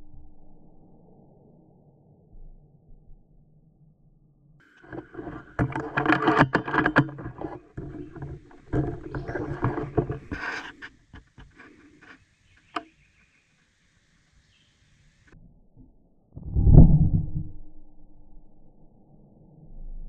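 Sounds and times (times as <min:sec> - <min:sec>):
rustling and crackling: 0:04.6 - 0:13.3.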